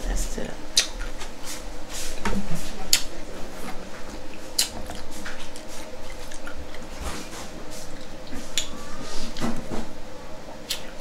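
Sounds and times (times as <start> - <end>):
wet chewing and sucking: 2.9 - 9.5.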